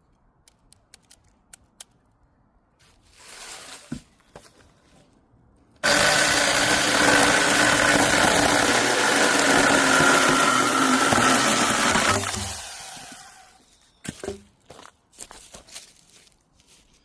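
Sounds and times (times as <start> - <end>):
mini chainsaw cutting wood: 5.8 - 13.6.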